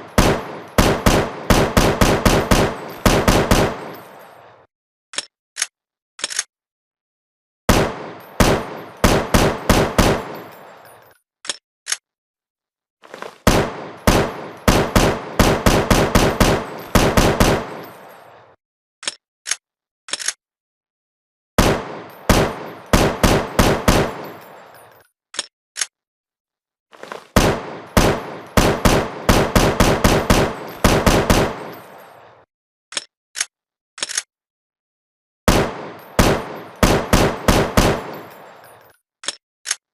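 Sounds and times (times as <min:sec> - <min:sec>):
rifle rapid fire bursts: 0:00.0 - 0:04.0, 0:07.7 - 0:10.5, 0:13.5 - 0:18.0, 0:21.6 - 0:24.4, 0:27.4 - 0:31.8, 0:35.5 - 0:38.4.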